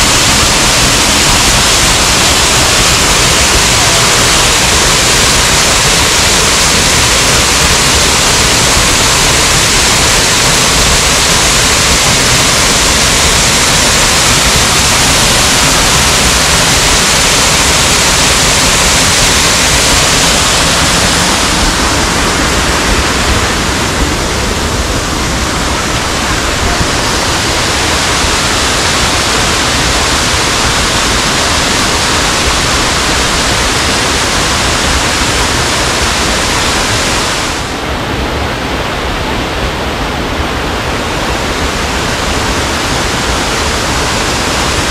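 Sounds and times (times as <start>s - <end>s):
waterfall roaring: 0.0s - 44.9s.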